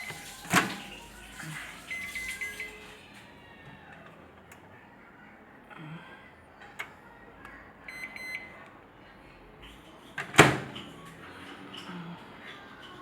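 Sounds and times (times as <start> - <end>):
microwave electronic beep: 0.0 - 3.0, 7.9 - 8.6.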